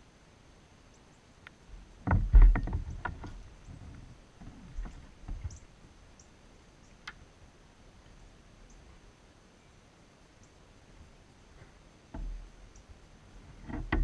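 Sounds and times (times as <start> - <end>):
handling knocks and clicks in kayak: 1.5 - 5.6, 11.6 - 14.0.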